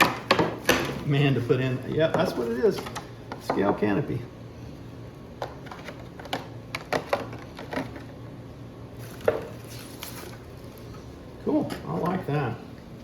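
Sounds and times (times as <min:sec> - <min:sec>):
packaging rustling: 0:09.0 - 0:10.9.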